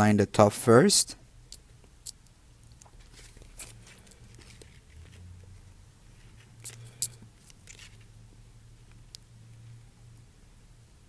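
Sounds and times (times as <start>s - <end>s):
low steady hum: 0.0s - 11.0s
vinyl skin crackling being peeled: 2.1s - 8.2s.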